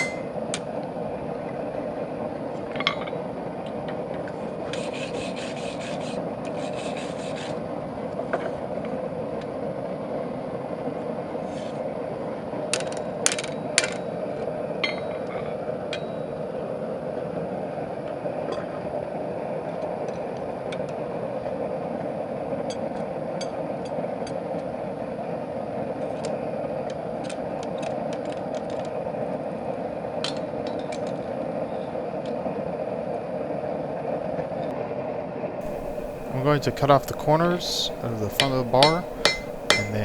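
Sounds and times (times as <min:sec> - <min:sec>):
light metal clicks and clinks: 0:35.6 - 0:40.0
workshop machine noise: 0:35.6 - 0:40.0.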